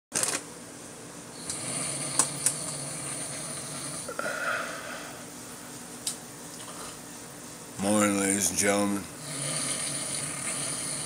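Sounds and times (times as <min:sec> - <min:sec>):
man snoring: 0:01.4 - 0:05.2, 0:08.8 - 0:11.0.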